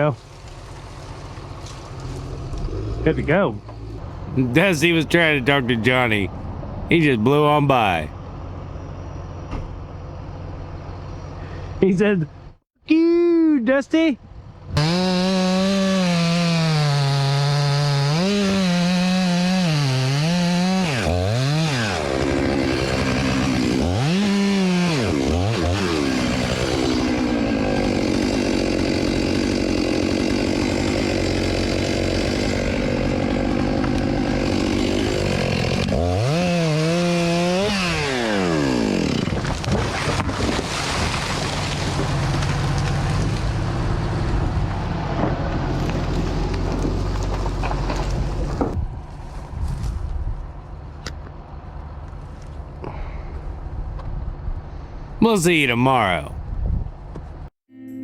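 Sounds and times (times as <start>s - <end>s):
chainsaw revving and cutting wood: 0.2s - 6.2s, 14.7s - 44.4s.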